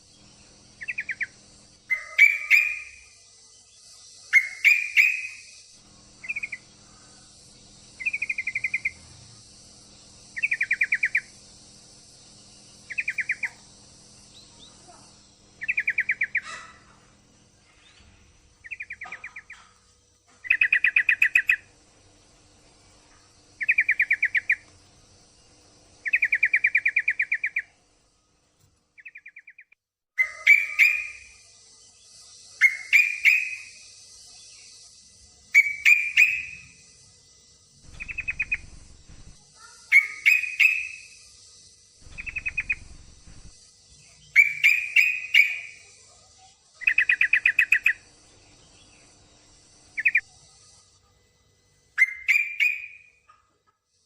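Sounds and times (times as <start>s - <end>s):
bird rattling chatter calls: 0.8s - 3.1s, 12.6s - 17.2s, 35.5s - 36.8s, 37.8s - 41.3s, 42.0s - 48.2s.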